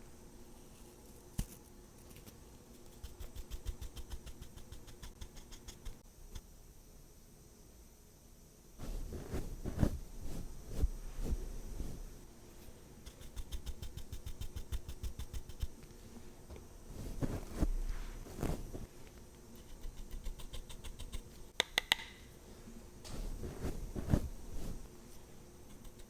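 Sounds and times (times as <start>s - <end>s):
soft brushing swishes: 8.8s - 19.2s, 22.4s - 26.0s.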